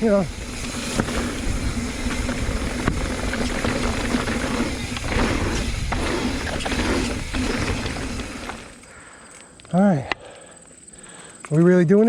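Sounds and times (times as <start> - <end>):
mountain bike rattling: 0.0 - 8.8
wind buffeting microphone: 0.0 - 8.8
bike knocking over rocks: 0.3 - 8.8.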